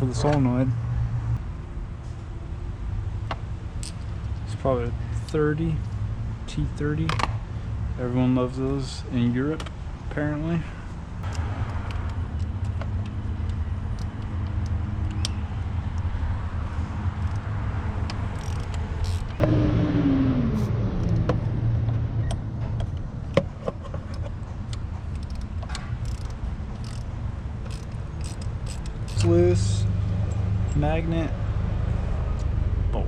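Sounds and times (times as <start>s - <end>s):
workshop hum: 10.7s - 32.8s
hand tools clicking: 17.2s - 19.4s, 24.1s - 29.4s.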